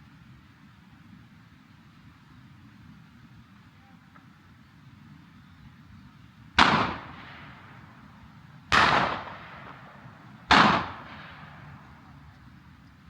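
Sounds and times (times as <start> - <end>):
shotgun shots: 6.6 - 8.1, 8.7 - 12.0.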